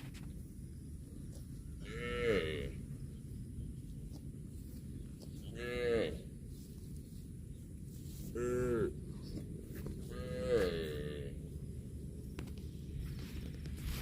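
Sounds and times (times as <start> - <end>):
low background rumble: 0.0 - 14.0
cattle mooing: 10.1 - 11.4.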